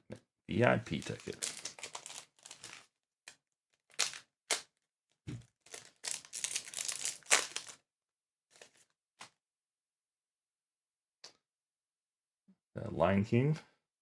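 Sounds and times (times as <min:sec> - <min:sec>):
foil wrapper crinkling: 0:00.9 - 0:02.9, 0:03.8 - 0:04.7, 0:05.5 - 0:07.8.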